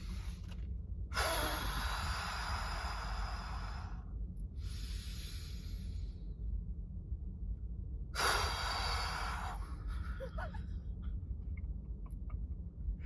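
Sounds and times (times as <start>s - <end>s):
man breathing heavily: 1.2s - 6.2s, 8.2s - 10.0s.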